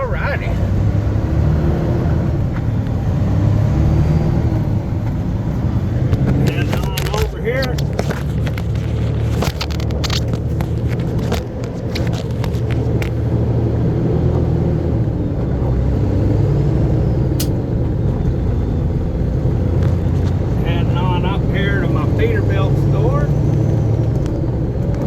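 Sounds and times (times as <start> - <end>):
truck engine drone and road noise: 0.0 - 25.0
rattles and clicks: 6.0 - 13.3
sharp click: 17.4 - 17.6.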